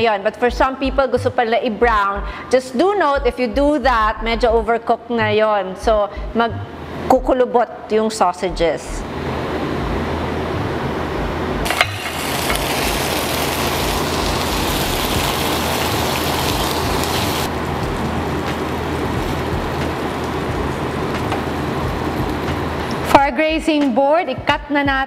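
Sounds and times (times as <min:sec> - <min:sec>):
sausages sizzling in a frying pan: 0:11.7 - 0:23.0.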